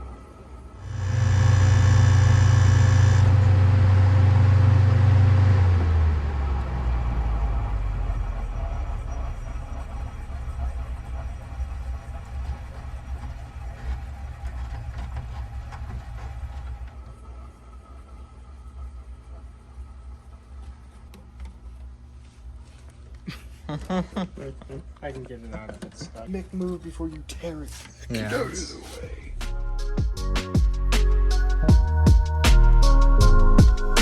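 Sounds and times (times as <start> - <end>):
air conditioner humming: 0.0 - 30.0
motor winding down: 0.8 - 16.8
low rumble: 0.8 - 18.0.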